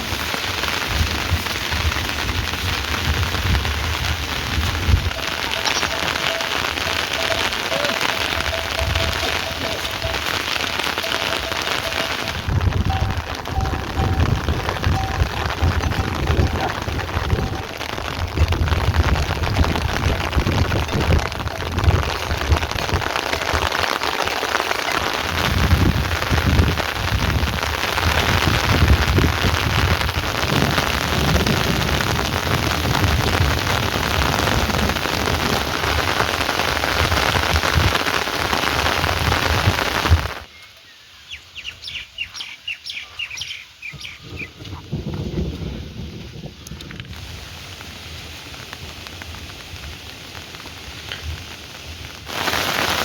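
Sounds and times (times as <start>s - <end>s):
heavy rain pouring: 0.0s - 40.5s, 41.6s - 53.0s
low rumble: 1.8s - 23.5s
bird chirping: 40.5s - 44.6s.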